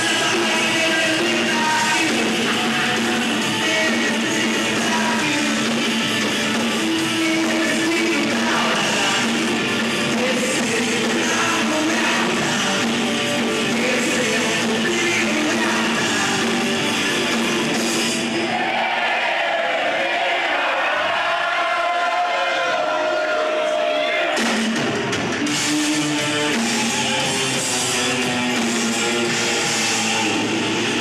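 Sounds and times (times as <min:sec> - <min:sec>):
electric guitar: 0:00.0 - 0:18.4
live rock band playing: 0:00.0 - 0:18.4, 0:24.4 - 0:31.0.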